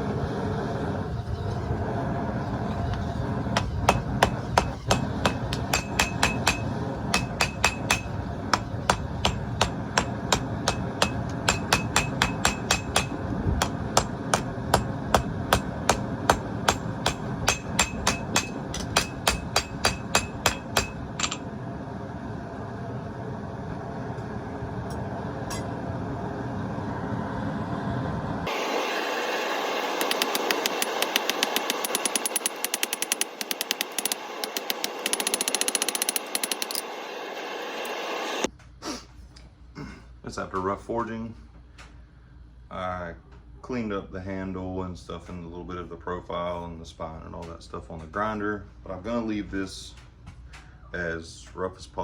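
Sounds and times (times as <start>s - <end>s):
steady background noise: 0.0s - 38.5s
hammer ringing on anvil: 3.6s - 21.4s.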